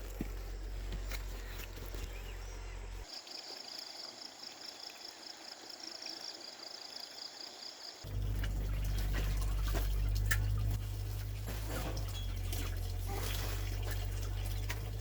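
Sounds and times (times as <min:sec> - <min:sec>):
low steady rumble: 0:08.1 - 0:15.0.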